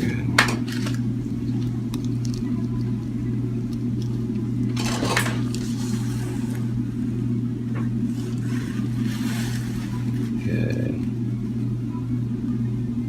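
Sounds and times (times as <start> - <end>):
steady low hum: 0.0 - 13.0
rustling scrape: 4.8 - 6.8, 8.0 - 10.5.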